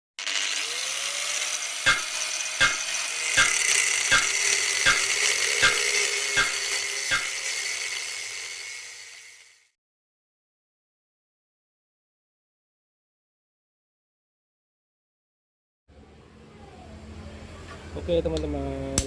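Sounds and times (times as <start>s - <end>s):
power tool hissing on wood: 0.2s - 9.8s.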